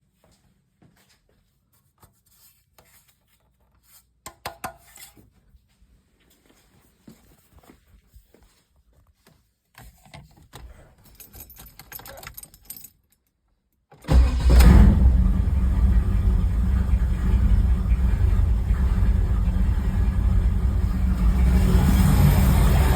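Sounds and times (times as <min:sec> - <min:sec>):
faint clicks and scraping: 0:07.1 - 0:13.4.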